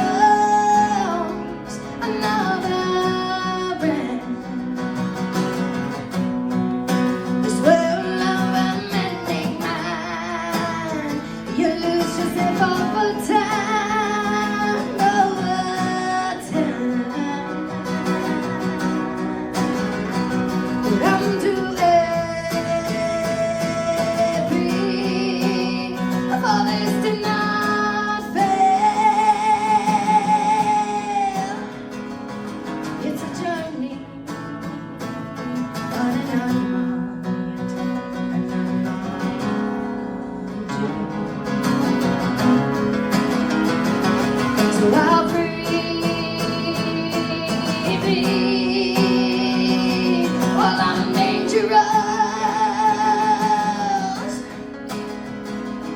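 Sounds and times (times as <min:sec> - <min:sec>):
woman singing: 0:00.0 - 0:05.0, 0:07.2 - 0:19.6, 0:20.7 - 0:31.8, 0:32.8 - 0:34.9, 0:35.8 - 0:37.8, 0:44.4 - 0:54.7
strummed acoustic guitar: 0:00.0 - 0:55.9.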